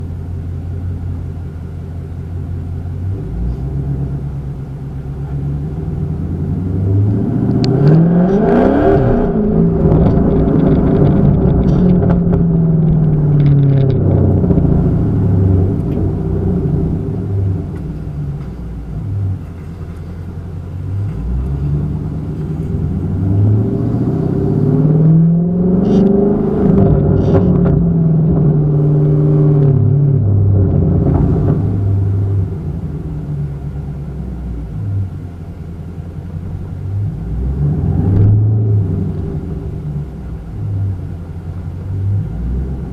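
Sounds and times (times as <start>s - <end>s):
car engine idling and revving: 0.0s - 42.9s
exhaust pops and crackles: 7.5s - 23.6s, 25.7s - 35.3s.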